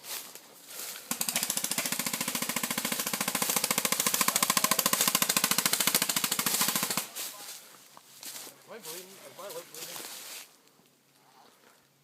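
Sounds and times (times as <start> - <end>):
airsoft gun full-auto firing: 1.1 - 7.1.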